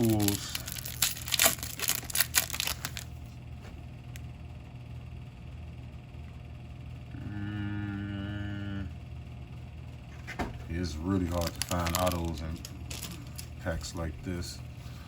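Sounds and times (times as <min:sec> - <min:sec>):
wrapper crinkling and tearing: 0:00.0 - 0:03.2, 0:11.2 - 0:13.6
steady low hum: 0:00.0 - 0:15.0.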